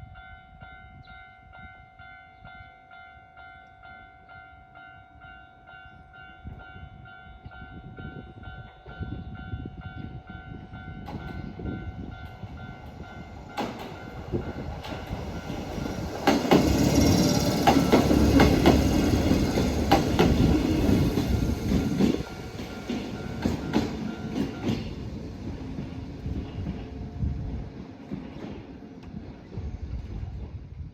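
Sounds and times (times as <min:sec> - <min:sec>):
train wheels clacking over rail joints: 0:13.5 - 0:25.0.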